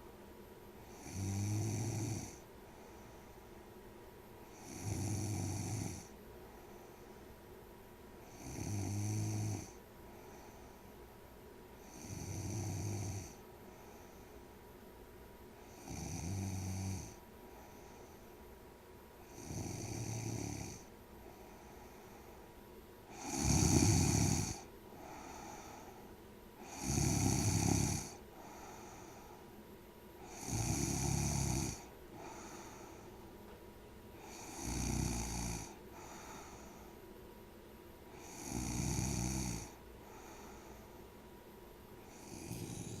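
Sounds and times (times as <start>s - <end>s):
loud snoring: 0.8s - 2.4s, 4.5s - 6.1s, 8.3s - 9.8s, 11.8s - 13.4s, 15.7s - 17.2s, 19.2s - 20.9s, 23.1s - 25.8s, 26.6s - 28.8s, 30.2s - 32.9s, 34.2s - 36.9s, 38.1s - 40.7s, 42.1s - 43.0s
soft breathing: 2.3s - 5.1s, 6.0s - 7.5s, 9.7s - 12.7s, 13.3s - 14.7s, 17.1s - 18.6s, 20.8s - 23.4s, 24.5s - 26.8s, 27.5s - 30.4s, 31.1s - 34.6s, 35.6s - 37.2s, 39.6s - 41.2s, 41.9s - 43.0s.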